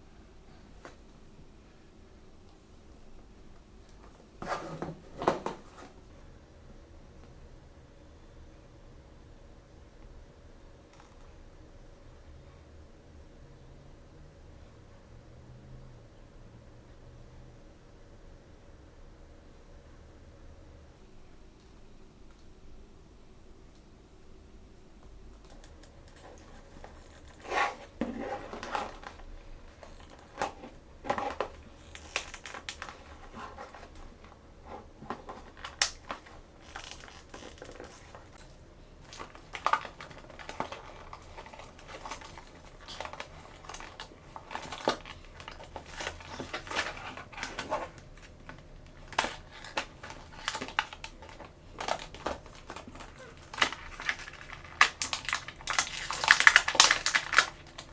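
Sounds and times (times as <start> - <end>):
plastic packaging crinkling and tearing: 26.1 - 57.9.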